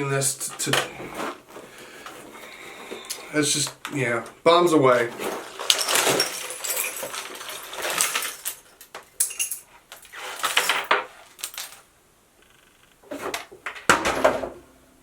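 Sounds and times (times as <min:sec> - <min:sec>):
small pieces clattering and rattling: 0:04.9 - 0:11.9.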